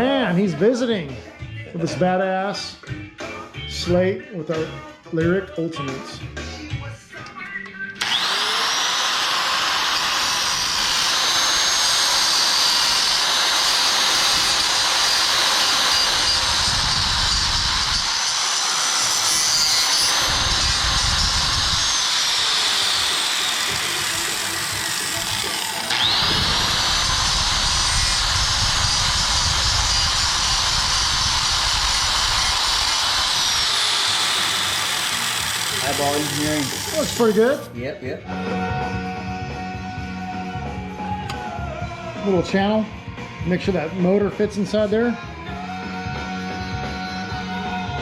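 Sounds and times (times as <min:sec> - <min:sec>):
rotary tool grinding metal: 0:08.0 - 0:37.7.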